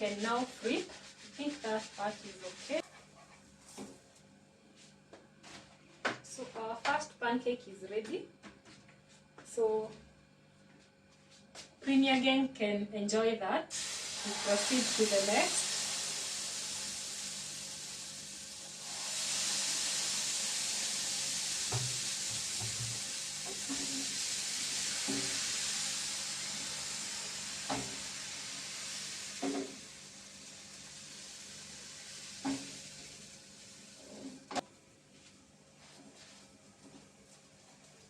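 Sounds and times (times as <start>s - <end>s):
batter sizzling in frying pan: 13.7s - 34.6s.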